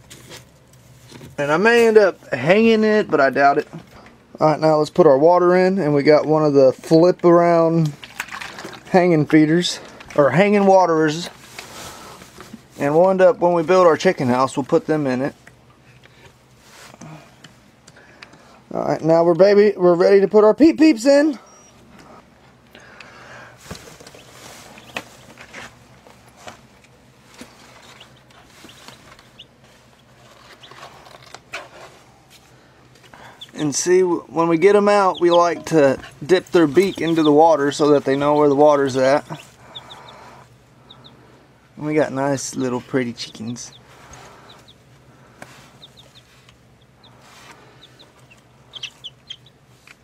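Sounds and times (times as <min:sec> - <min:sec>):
steady low hum: 0:00.0 - 0:50.0
chicks peeping: 0:21.4 - 0:22.9, 0:23.6 - 0:25.5, 0:27.3 - 0:31.4, 0:33.0 - 0:50.0
rustling: 0:23.6 - 0:33.8, 0:43.8 - 0:50.0.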